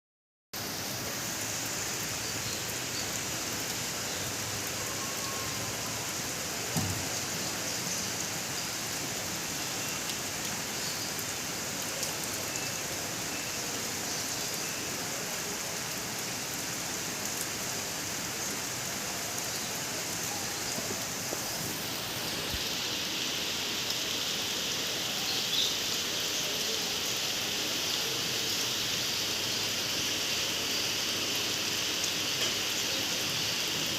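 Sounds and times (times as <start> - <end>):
steady rain falling: 0.6 - 33.9.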